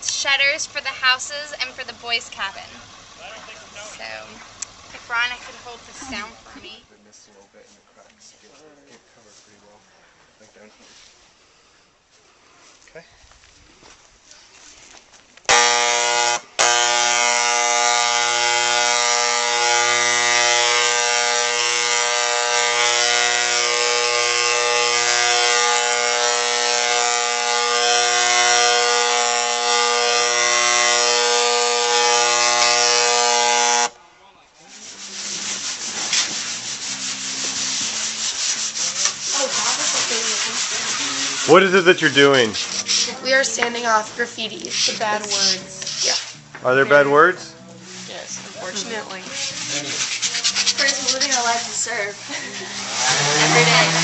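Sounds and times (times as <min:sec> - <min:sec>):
electric power sander whining: 0:15.5 - 0:34.0, 0:52.3 - 0:54.0
scratchy sanding on wood: 0:18.6 - 0:33.9, 0:34.6 - 0:44.0, 0:44.6 - 0:46.4, 0:47.9 - 0:54.0.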